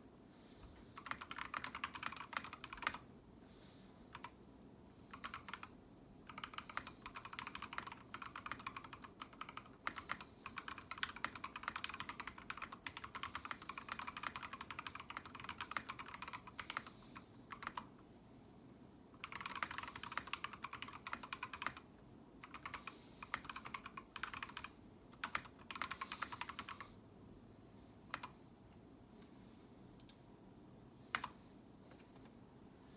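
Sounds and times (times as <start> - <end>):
mechanical keyboard typing: 1.0 - 3.0, 4.1 - 4.4, 5.1 - 17.9, 19.2 - 21.8, 22.4 - 26.9, 28.1 - 28.4.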